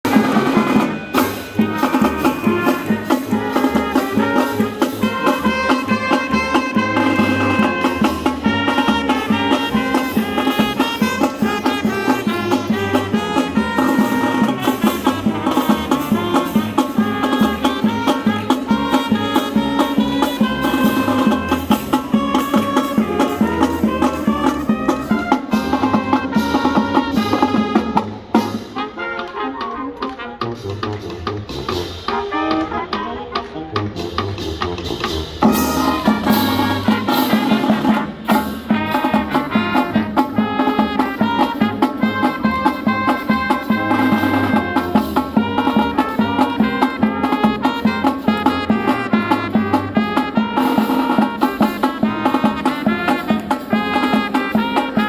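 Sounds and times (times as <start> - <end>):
upbeat music with brass and drums: 0.0 - 55.0.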